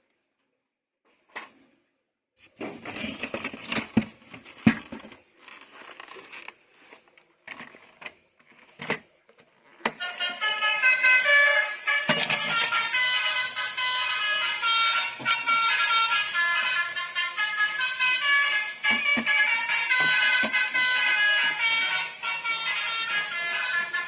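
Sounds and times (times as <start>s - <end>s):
toy packaging rustling: 2.6s - 24.0s
toy playing high beeping tune: 10.0s - 24.0s.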